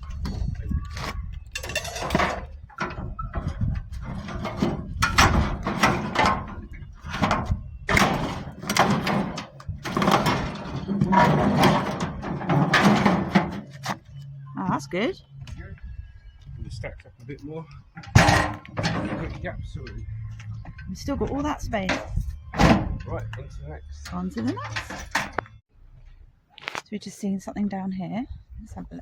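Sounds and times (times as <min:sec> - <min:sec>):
scrap metal clanking and scraping: 0:00.0 - 0:15.0, 0:17.9 - 0:25.6.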